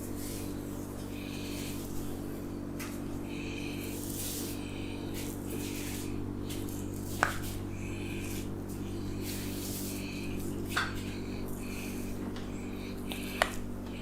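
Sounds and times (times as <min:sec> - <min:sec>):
steady low hum: 0:00.0 - 0:14.0
hands rubbing hair and scalp: 0:03.8 - 0:11.0.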